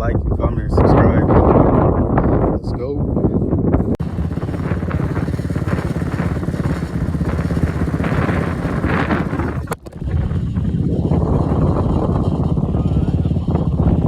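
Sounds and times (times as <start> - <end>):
vehicle engine running: 3.7 - 14.0.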